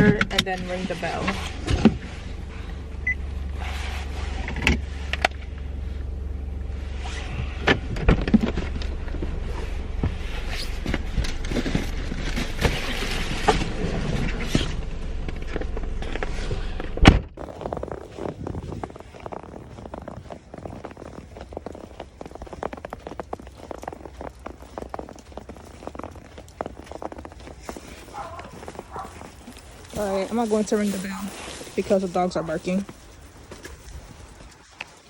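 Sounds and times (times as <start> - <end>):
knocks and rustling in car: 0.0 - 2.1, 7.4 - 17.5
car engine idling: 0.1 - 31.2.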